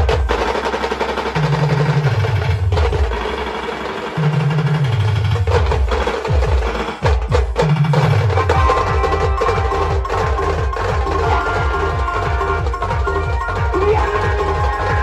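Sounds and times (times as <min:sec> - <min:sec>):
band music with heavy percussion: 0:00.0 - 0:15.0
sharp drum strikes: 0:00.0 - 0:15.0
pulsing bass beat: 0:05.4 - 0:15.0
deep bass notes: 0:08.5 - 0:15.0.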